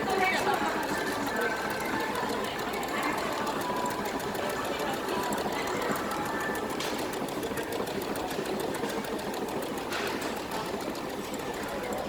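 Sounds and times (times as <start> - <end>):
sewing machine stitching: 0.0 - 12.0.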